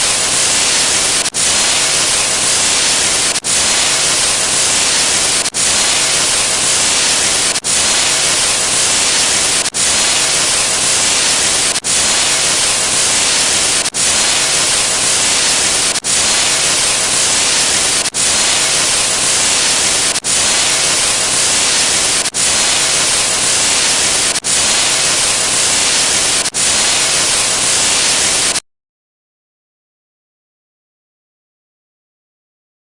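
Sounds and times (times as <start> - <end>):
loud static hiss: 0.0 - 28.6.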